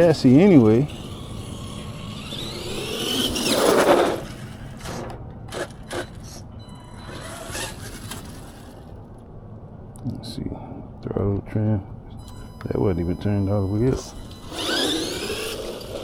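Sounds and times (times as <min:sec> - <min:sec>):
electric toy truck motor whining: 0:00.4 - 0:08.9, 0:13.9 - 0:16.0.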